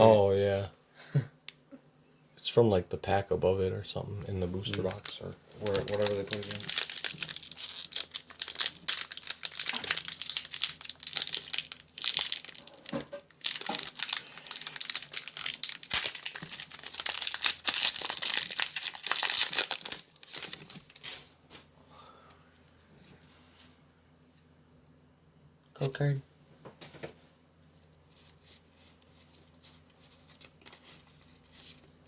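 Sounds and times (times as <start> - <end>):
foil wrapper crinkling and tearing: 4.4 - 21.4, 28.2 - 32.0.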